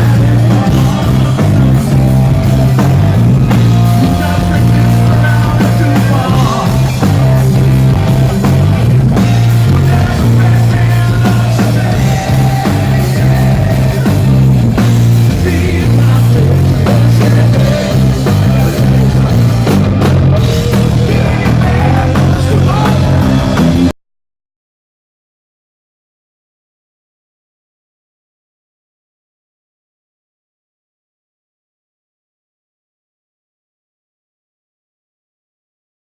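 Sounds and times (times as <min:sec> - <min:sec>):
live rock band playing: 0:00.0 - 0:23.9.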